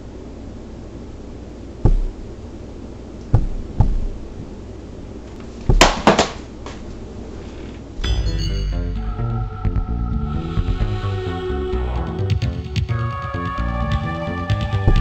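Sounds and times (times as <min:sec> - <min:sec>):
hard thumps: 0:01.8 - 0:02.6, 0:03.2 - 0:04.6, 0:05.3 - 0:06.8.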